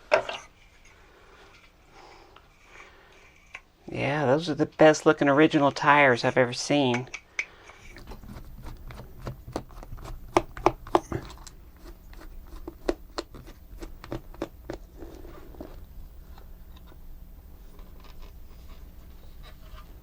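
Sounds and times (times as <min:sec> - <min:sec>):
steady low hum: 0:07.8 - 0:20.0.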